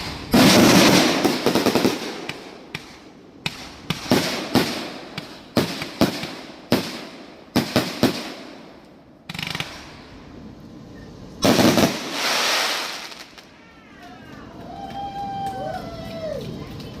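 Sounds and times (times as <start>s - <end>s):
fireworks bangs: 0.0s - 10.2s, 11.4s - 13.6s
fireworks crackling pops: 0.0s - 10.2s, 11.4s - 14.6s
hissing crackle: 11.5s - 13.5s.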